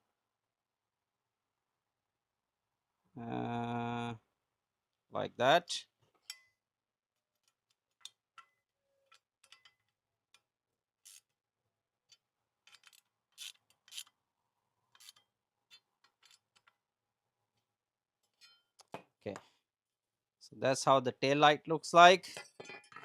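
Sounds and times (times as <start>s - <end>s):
clicks of small parts handled: 12.1s - 14.2s, 14.9s - 16.8s.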